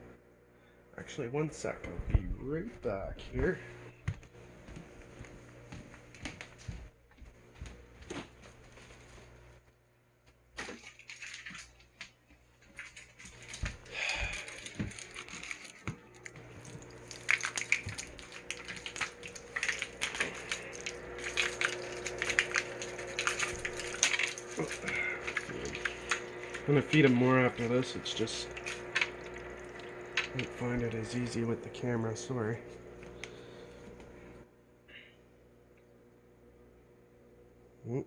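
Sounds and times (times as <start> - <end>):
steady low hum: 0.0 - 10.1, 12.4 - 38.0
small objects clicking and rattling: 12.9 - 27.8.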